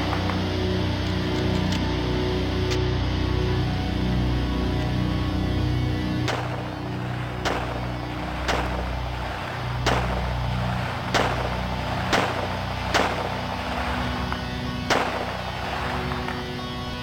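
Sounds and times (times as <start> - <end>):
steady low drone: 0.0 - 17.0
pistol shots: 6.2 - 16.4.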